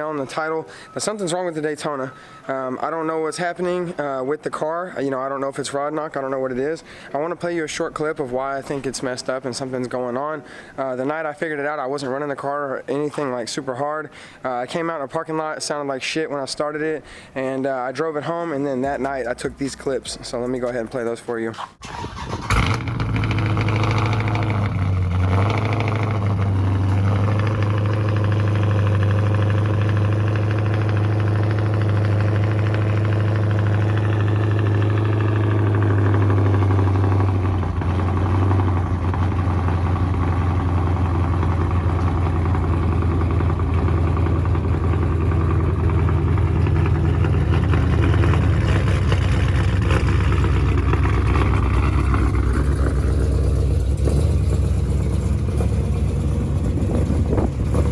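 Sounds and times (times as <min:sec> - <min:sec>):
car engine idling: 0:21.8 - 0:57.9.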